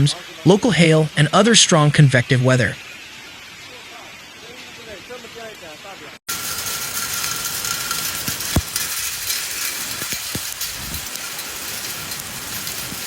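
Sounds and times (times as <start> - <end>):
heavy rain hissing: 3.6 - 13.0.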